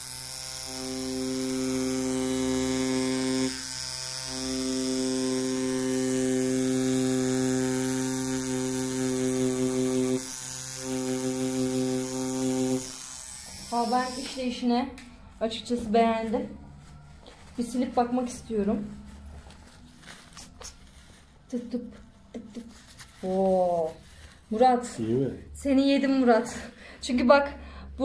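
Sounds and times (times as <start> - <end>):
tattoo machine buzzing: 0.0 - 14.6.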